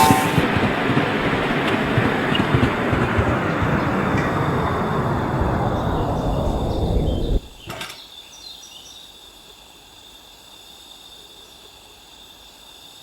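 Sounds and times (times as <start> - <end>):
short clack: 0.0 - 0.7
miniature train running on track: 0.0 - 8.0.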